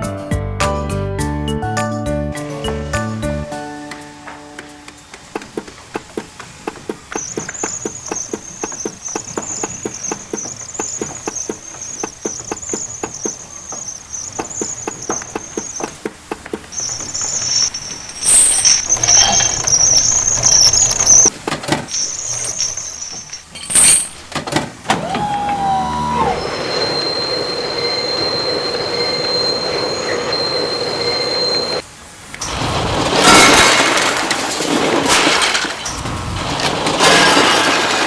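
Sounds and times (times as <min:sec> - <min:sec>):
toy train wheels clicking: 0:04.6 - 0:23.6
high wavering wheel squeal: 0:07.1 - 0:16.0, 0:16.7 - 0:21.3, 0:21.9 - 0:24.2, 0:25.0 - 0:31.8.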